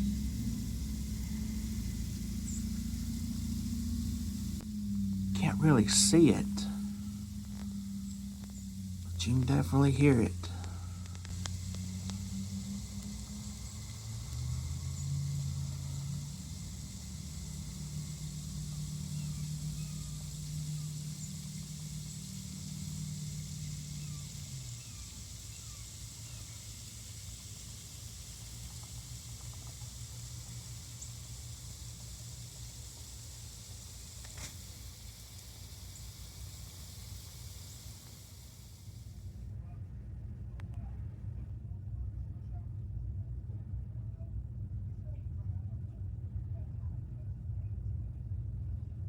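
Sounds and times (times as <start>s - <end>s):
sleet pelting the ground: 0.0s - 38.8s
air conditioner unit humming: 0.0s - 49.0s.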